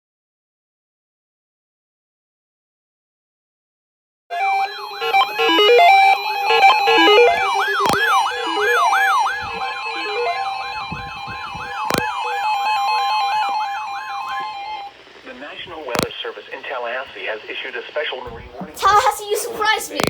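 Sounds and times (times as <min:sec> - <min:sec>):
siren yelp: 0:04.3 - 0:15.0
electronic synthesizer music: 0:04.3 - 0:15.2
steady tone: 0:04.3 - 0:17.6
sharp clicks: 0:05.0 - 0:17.2.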